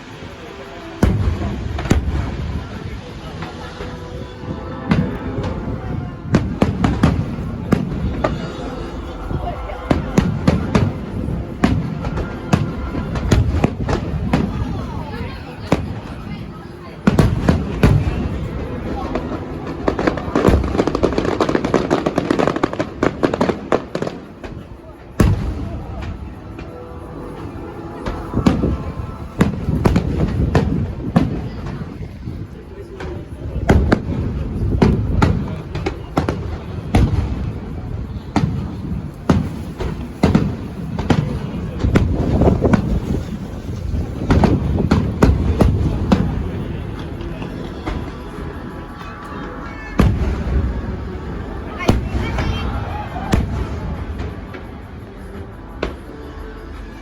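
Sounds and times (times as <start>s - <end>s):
fireworks crackling: 0.0s - 57.0s
low booming rumble: 1.0s - 16.2s, 24.4s - 32.4s.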